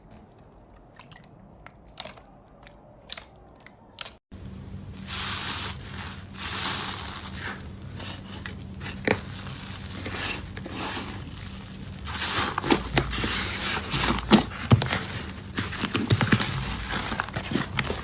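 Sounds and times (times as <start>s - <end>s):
slime squishing and crackling: 5.0s - 18.0s.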